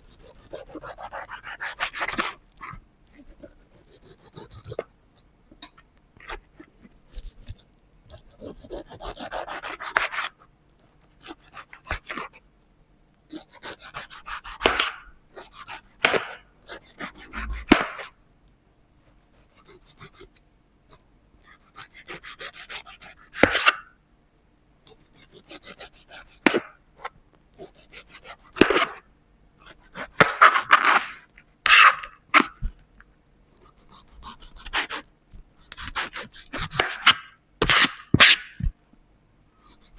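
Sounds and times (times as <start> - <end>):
knife cutting pineapple: 22.0 - 23.9, 25.3 - 29.0, 29.9 - 32.7, 33.6 - 38.7.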